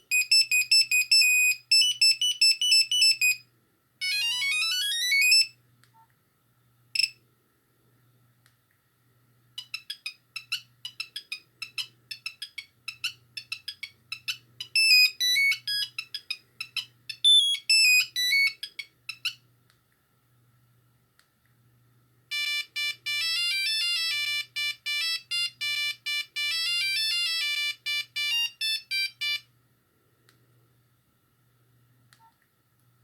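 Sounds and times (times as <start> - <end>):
staccato beeping ringtone melody: 0.1 - 3.4, 4.0 - 5.5, 9.6 - 19.3, 22.3 - 29.4.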